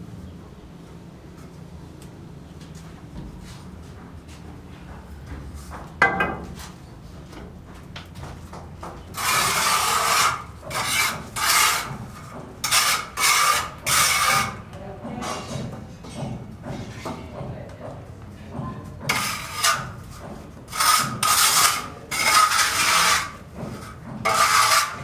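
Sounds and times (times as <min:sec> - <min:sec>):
rasping scraping strokes: 0:09.1 - 0:14.7, 0:19.1 - 0:25.0.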